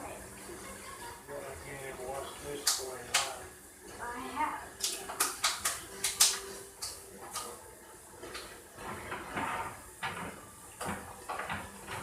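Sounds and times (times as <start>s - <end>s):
dishes and containers clattering: 4.8s - 12.0s.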